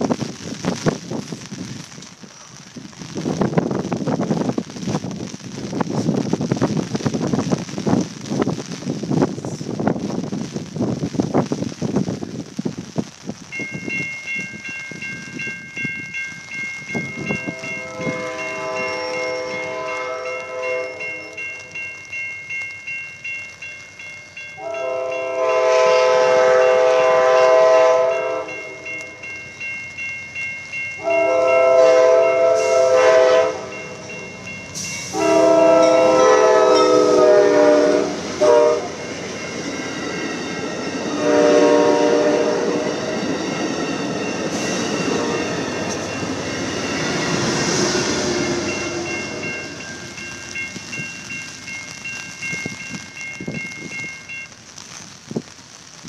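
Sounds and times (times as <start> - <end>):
rush of passing train: 0.0 - 56.0
train horn blasts: 17.3 - 21.7, 24.6 - 29.2, 31.0 - 33.9, 34.8 - 39.1, 41.0 - 43.4, 44.5 - 46.1, 46.7 - 49.8
train wheels clicking over rail joints: 42.8 - 54.2.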